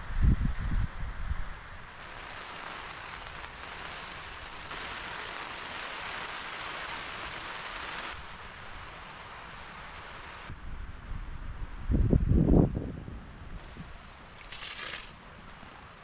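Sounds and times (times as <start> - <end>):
stream flowing: 14.2 - 16.0.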